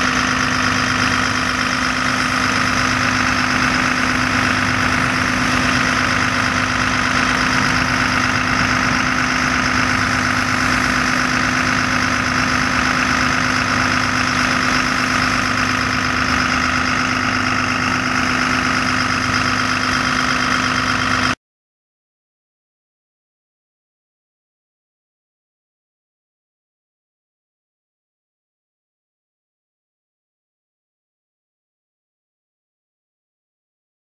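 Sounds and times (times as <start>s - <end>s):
fire engine idling: 0.0s - 21.4s.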